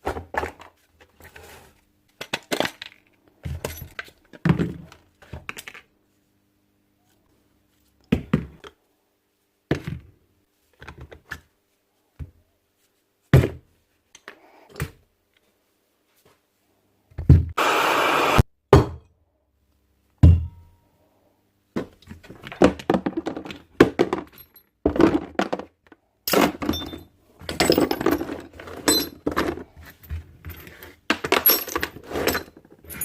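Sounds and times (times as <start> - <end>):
steady power tool noise: 17.6 - 18.4.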